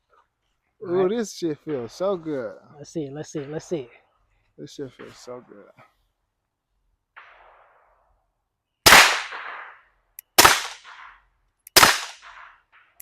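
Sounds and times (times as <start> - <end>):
suppressed pistol shots: 8.9 - 12.6.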